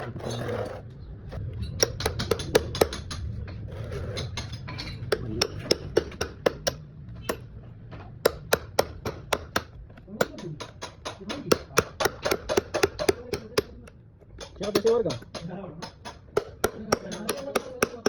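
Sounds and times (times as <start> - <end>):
tool tapping hard object: 1.7 - 18.0.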